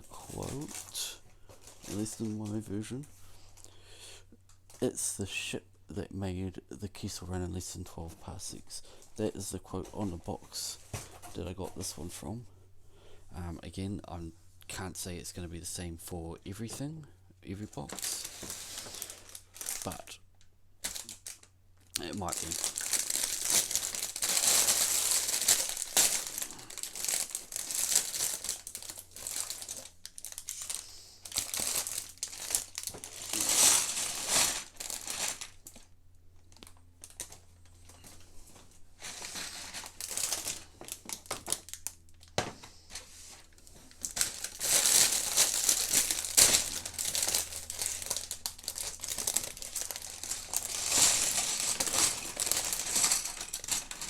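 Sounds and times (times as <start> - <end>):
plastic bags crinkling: 0.0 - 3.7, 17.7 - 20.2, 20.8 - 54.0.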